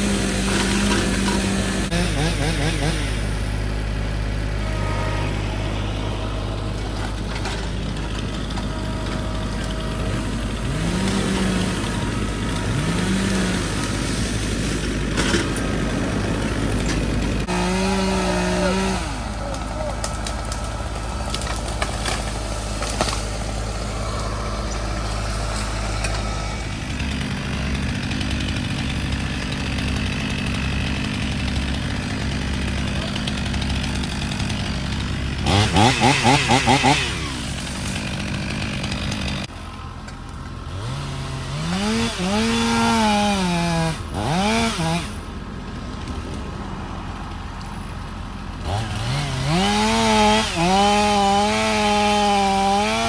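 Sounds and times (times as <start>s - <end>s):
chainsaw revving: 0.0s - 39.6s, 40.6s - 53.0s
low engine hum: 0.8s - 41.6s.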